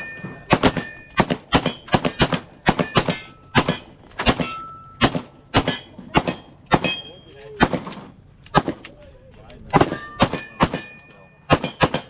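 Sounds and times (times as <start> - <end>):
ringing tones: 0.0 - 1.2, 2.7 - 5.0, 9.8 - 11.8
rapid pistol fire: 0.5 - 7.0, 11.5 - 12.0.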